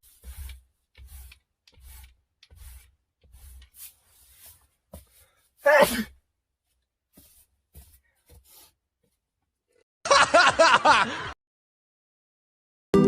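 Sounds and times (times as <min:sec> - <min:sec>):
laughter: 0:10.0 - 0:11.4.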